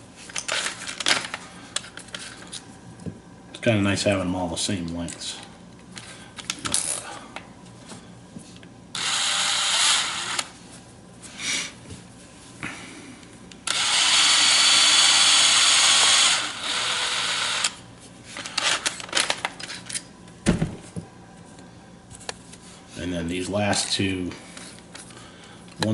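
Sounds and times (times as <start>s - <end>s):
drill spinning: 8.9s - 10.6s, 13.6s - 17.8s.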